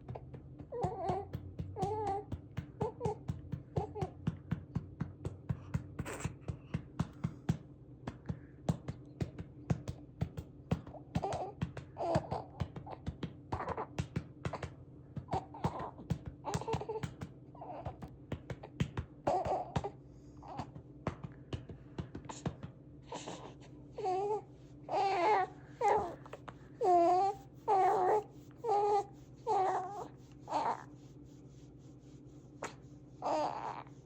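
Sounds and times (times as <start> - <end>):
hand patting baby's back: 0.0 - 22.8.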